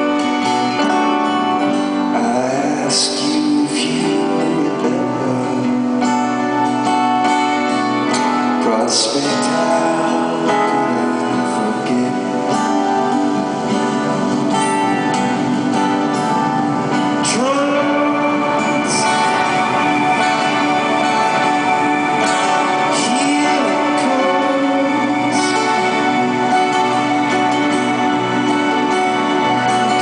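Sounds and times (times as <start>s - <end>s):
strummed guitar: 0.0s - 30.0s
person singing: 2.1s - 6.7s, 8.3s - 13.6s, 17.0s - 30.0s.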